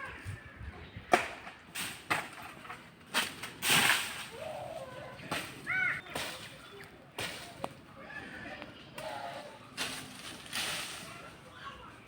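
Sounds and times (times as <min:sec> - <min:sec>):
blade chopping palm trunk: 0:05.3 - 0:06.6.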